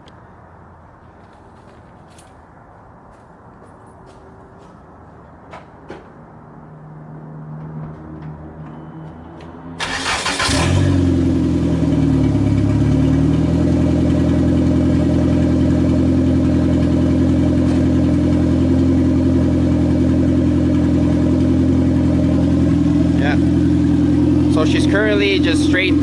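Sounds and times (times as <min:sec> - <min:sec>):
engine cranking and starting: 0:09.8 - 0:11.1
engine idling: 0:09.8 - 0:26.0.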